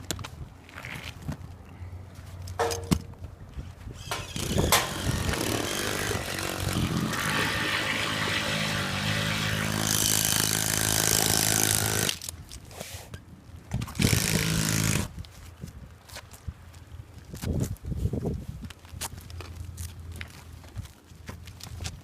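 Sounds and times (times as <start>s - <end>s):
small engine running: 4.1s - 12.1s.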